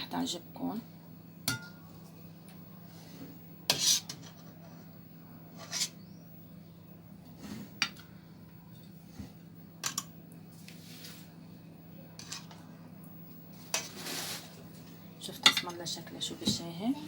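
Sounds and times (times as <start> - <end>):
low steady hum: 0.0 - 17.0
utensil clinking on cookware: 1.5 - 1.8.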